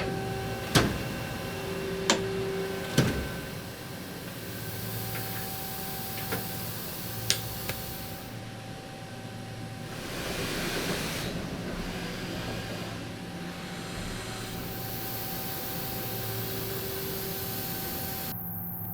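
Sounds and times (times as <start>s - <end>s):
machine hum: 0.0s - 18.3s
rush of hiss: 13.5s - 18.3s.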